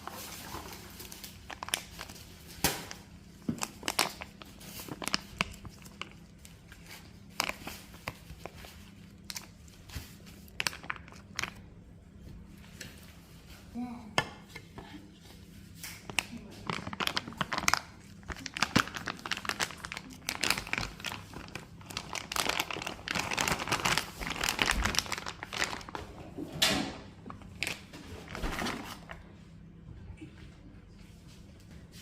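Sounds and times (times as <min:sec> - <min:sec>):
packaging crinkling: 0:00.0 - 0:11.6, 0:16.0 - 0:26.1, 0:27.3 - 0:29.2.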